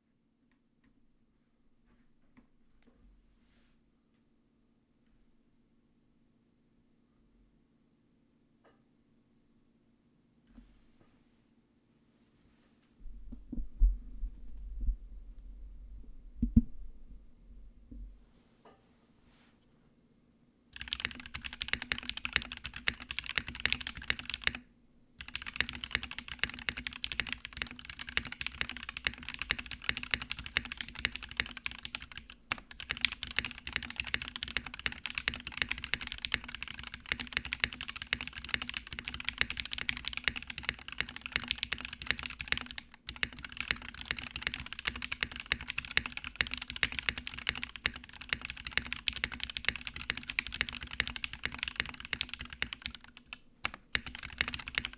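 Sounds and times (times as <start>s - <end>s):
fast mechanical keyboard typing: 20.8s - 24.6s, 25.2s - 54.9s.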